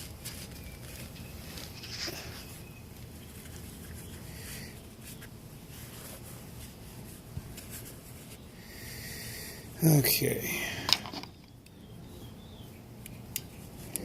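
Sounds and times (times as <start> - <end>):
hands rustling and scraping parts: 0.0 - 8.5, 10.8 - 11.8.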